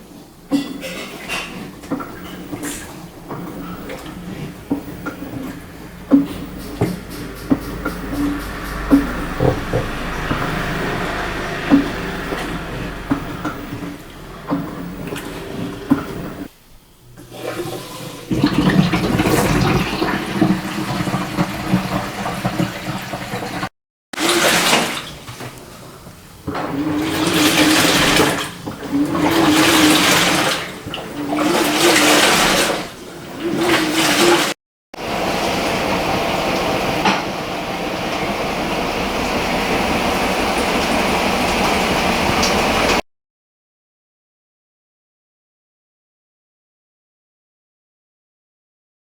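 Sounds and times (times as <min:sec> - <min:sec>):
water sloshing in washing machine: 0:00.0 - 0:16.5, 0:17.1 - 0:43.0
low motor hum: 0:01.8 - 0:17.3, 0:35.0 - 0:43.0.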